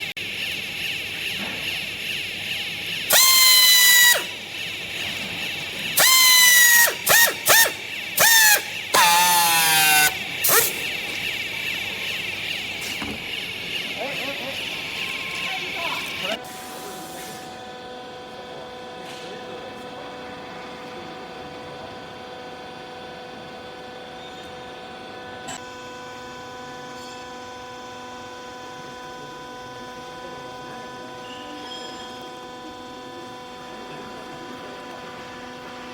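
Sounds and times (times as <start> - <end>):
electric motor and pump humming: 0.0 - 18.8, 19.8 - 35.9
power drill motor whining: 3.0 - 16.4
sharp machine click: 6.0 - 11.0.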